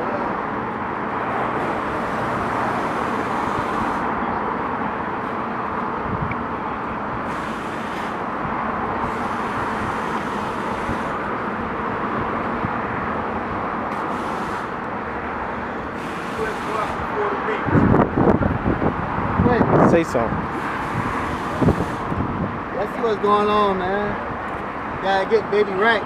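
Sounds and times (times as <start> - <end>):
steady rushing hiss: 1.3 - 4.2, 7.2 - 11.6, 13.8 - 17.6, 19.9 - 24.1.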